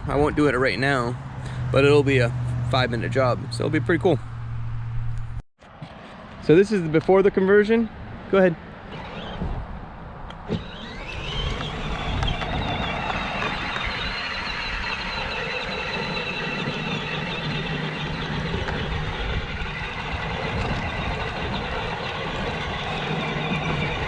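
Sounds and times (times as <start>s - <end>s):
ride-on toy car motor whine: 8.9s - 9.5s, 10.5s - 24.0s.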